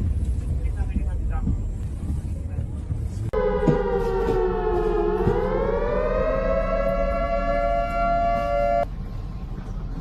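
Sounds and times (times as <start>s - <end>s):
siren wailing: 3.4s - 8.9s.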